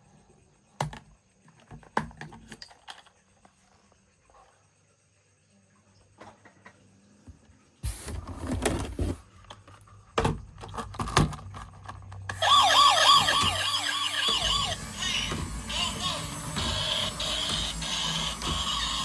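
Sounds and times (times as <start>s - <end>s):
plastic toys clicking and knocking: 0.8s - 3.2s, 9.6s - 19.0s
toy electronic siren warbling: 12.3s - 19.0s.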